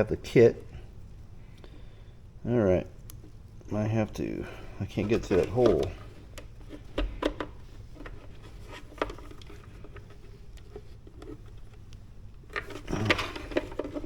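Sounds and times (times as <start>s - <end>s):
wiring connector clicking and scraping: 4.8s - 14.0s.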